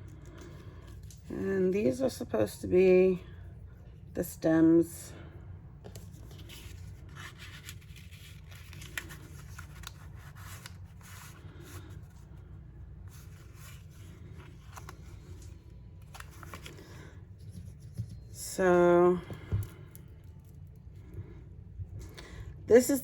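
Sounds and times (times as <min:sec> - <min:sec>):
paper rustling and rubbing: 0:05.9 - 0:12.4, 0:13.0 - 0:18.4.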